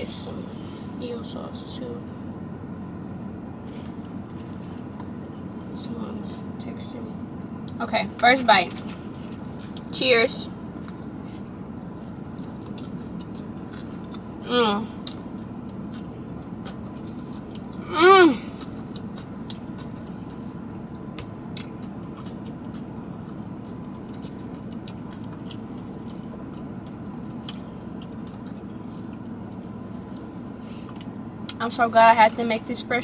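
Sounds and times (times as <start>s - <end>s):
person chewing: 12.2s - 14.4s, 15.0s - 31.6s
person humming mmm: 17.8s - 18.5s.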